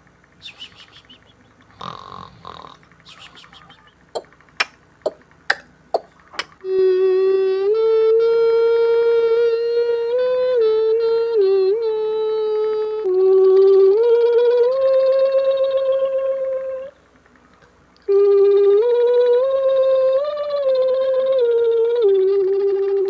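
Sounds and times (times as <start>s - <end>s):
mouth clicks: 0.4s - 6.6s
hummed vocal tone: 0.4s - 17.0s, 18.1s - 23.0s.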